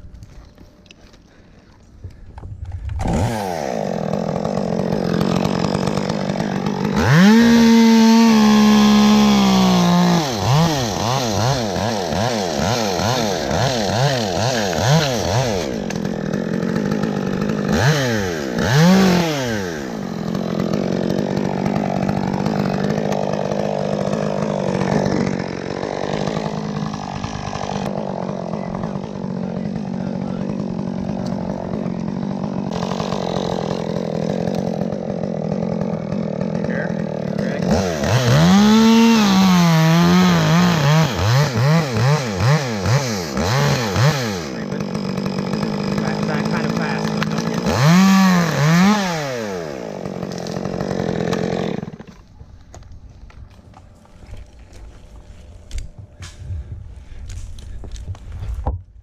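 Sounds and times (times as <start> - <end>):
chainsaw cutting wood: 0.0 - 59.0.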